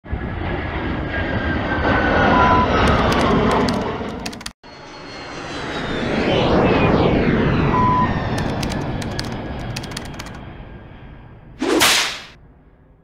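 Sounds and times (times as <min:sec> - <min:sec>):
jet fighter roaring past: 0:00.1 - 0:12.4.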